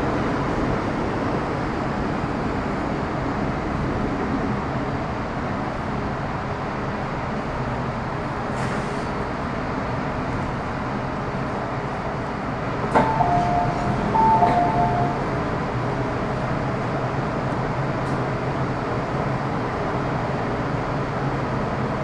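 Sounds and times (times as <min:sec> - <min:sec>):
train wheels rumbling: 0:11.2 - 0:18.6.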